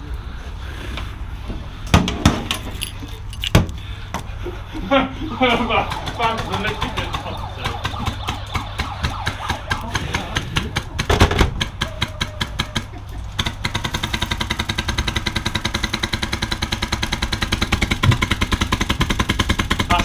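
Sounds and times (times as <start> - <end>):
airsoft guns firing full auto: 5.7 - 20.0.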